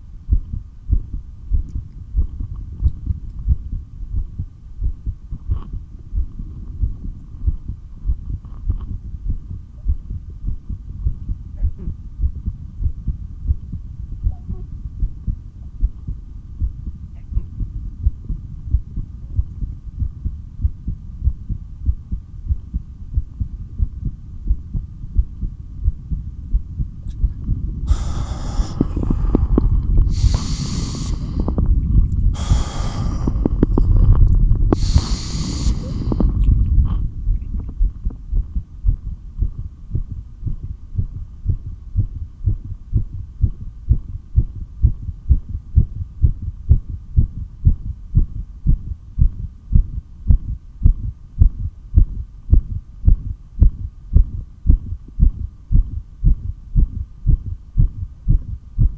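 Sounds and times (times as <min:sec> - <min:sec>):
heartbeat through stethoscope: 0:00.0 - 0:58.9
rushing breath sounds: 0:27.2 - 0:36.8.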